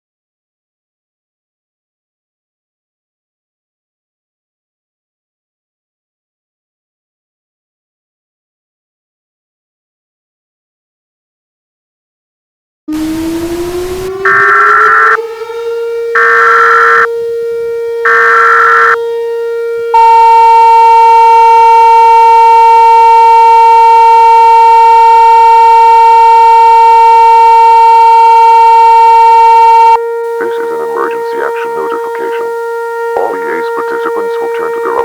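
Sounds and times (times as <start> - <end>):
buzzy attention tone: 12.9 - 17.1, 18.0 - 19.0, 24.4 - 35.0
siren tone: 12.9 - 35.0
digital data bursts: 13.0 - 15.2, 16.2 - 17.1, 18.1 - 19.0, 26.6 - 32.5.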